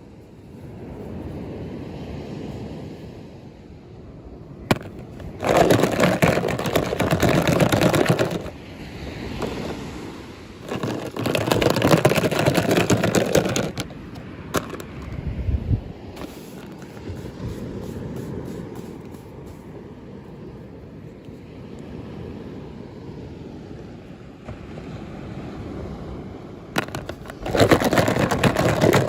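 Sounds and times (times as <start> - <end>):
packaging rustling and rattling: 4.7 - 8.6, 9.4 - 9.8, 10.6 - 15.2, 16.2 - 17.4, 26.8 - 29.0.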